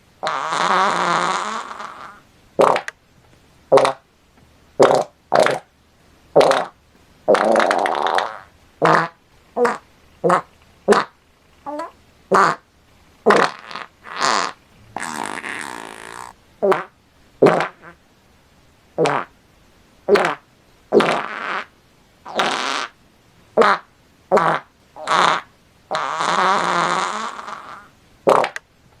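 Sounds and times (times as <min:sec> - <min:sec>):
fart sound effects: 0:00.2 - 0:03.0, 0:03.7 - 0:04.0, 0:04.8 - 0:05.7, 0:06.4 - 0:12.6, 0:13.2 - 0:18.0, 0:19.0 - 0:19.4, 0:20.1 - 0:21.7, 0:22.3 - 0:23.0, 0:23.6 - 0:28.6.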